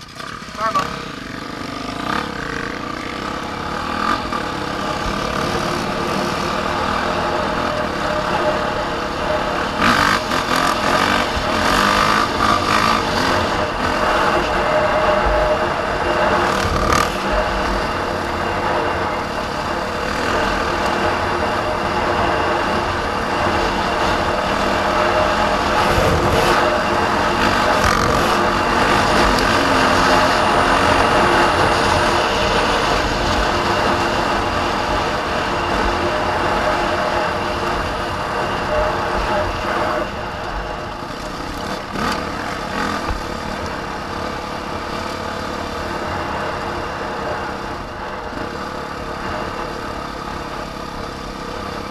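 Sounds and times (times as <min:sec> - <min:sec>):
constant rushing noise: 0:00.0 - 0:51.9
vehicle engine running: 0:00.0 - 0:51.9.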